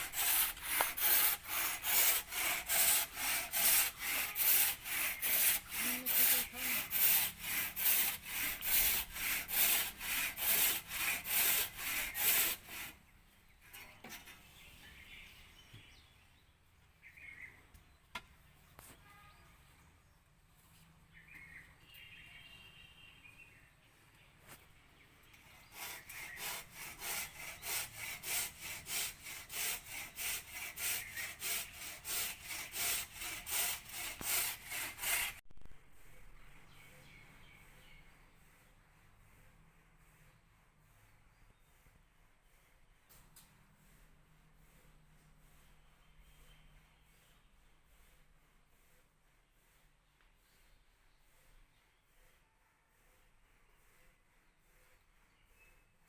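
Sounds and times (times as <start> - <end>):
hand saw cutting timber: 0.0 - 14.7, 25.3 - 35.4.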